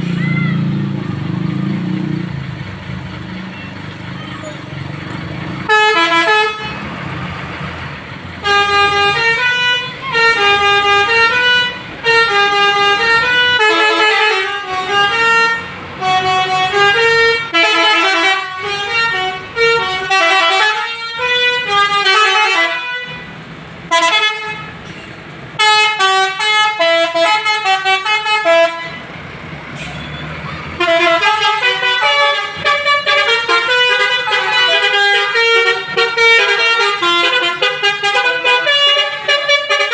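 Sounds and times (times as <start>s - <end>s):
musical bus air horn: 5.6s - 6.9s, 8.4s - 24.8s, 25.6s - 29.1s, 29.8s - 39.9s.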